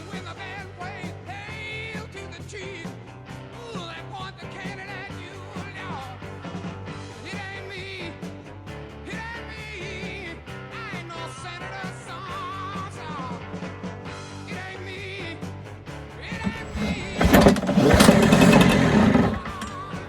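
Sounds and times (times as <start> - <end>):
rock and roll music with singing: 0.0 - 13.7.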